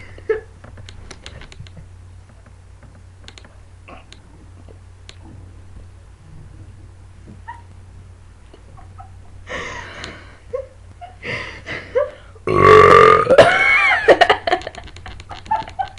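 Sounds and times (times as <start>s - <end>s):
girl belching: 12.5s - 13.4s.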